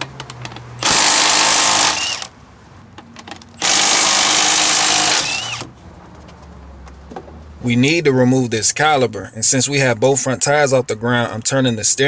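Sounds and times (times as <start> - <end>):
impact wrench bursts: 0.8 - 2.3, 3.6 - 5.7.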